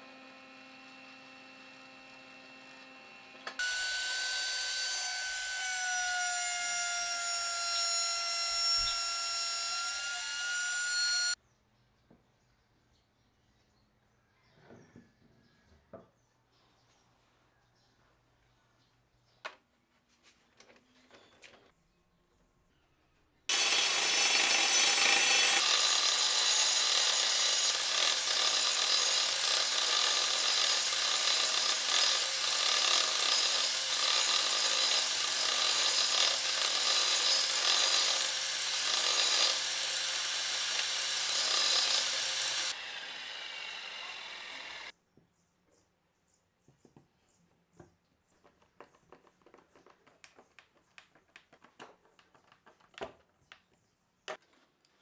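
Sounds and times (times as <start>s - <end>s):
circular saw cutting wood: 0.0s - 11.4s, 23.5s - 44.9s.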